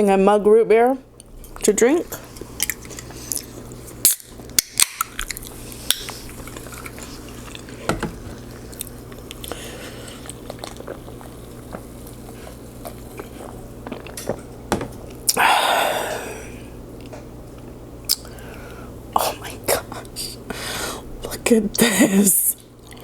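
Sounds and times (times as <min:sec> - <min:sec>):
person chewing and smacking: 0:01.2 - 0:14.5, 0:17.0 - 0:19.4, 0:22.8 - 0:23.0.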